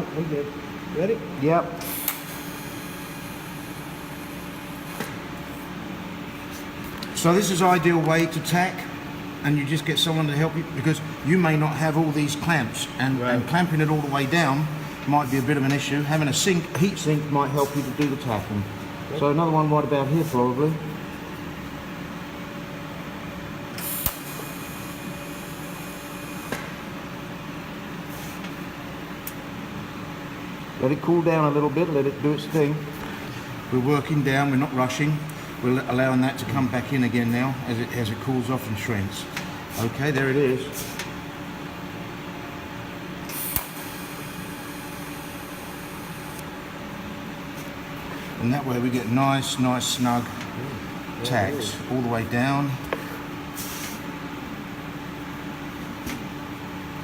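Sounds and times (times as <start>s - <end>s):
welding torch flame hissing: 1.8s - 7.6s, 23.8s - 26.8s, 43.2s - 46.5s, 53.0s - 54.2s
sharp click: 23.8s - 24.3s, 43.4s - 43.8s
single click: 43.5s - 43.8s.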